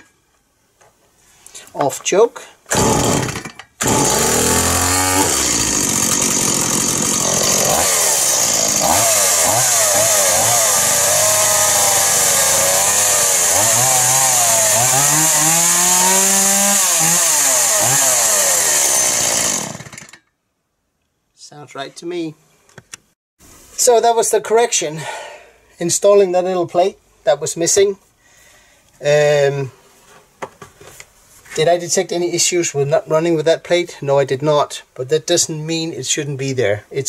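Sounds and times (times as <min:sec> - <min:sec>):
chainsaw revving: 0:02.7 - 0:20.2.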